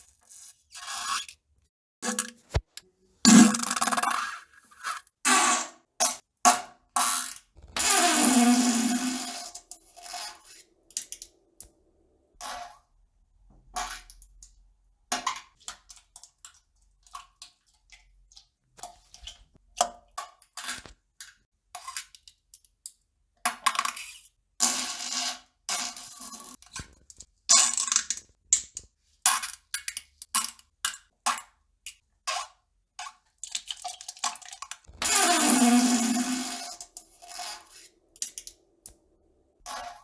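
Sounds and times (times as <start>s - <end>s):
sputtering farts: 3.3s - 4.0s, 34.9s - 36.7s.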